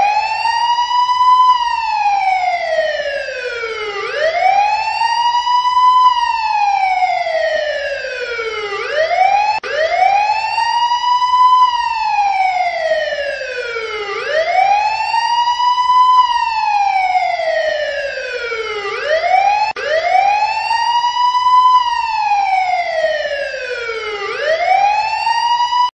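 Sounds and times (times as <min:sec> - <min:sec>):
emergency vehicle siren wailing: 0:00.0 - 0:26.0.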